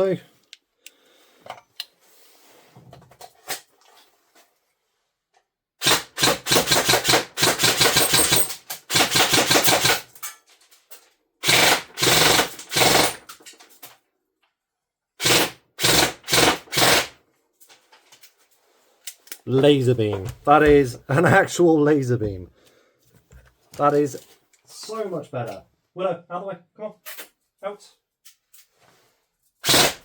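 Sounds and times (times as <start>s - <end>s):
airsoft rifle firing full auto: 5.8s - 10.1s, 11.4s - 13.3s, 15.2s - 17.2s, 29.6s - 30.0s.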